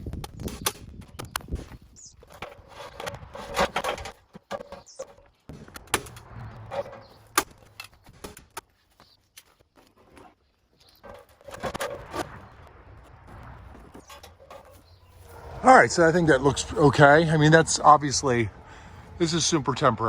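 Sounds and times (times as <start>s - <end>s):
rustling and handling noise: 0.0s - 15.7s.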